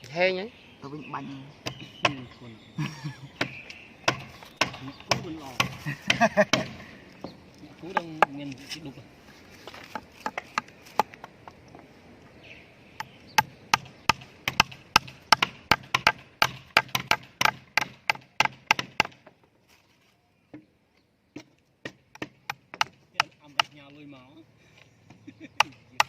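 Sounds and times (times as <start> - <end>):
hammer driving nails into wood: 13.0 - 19.3.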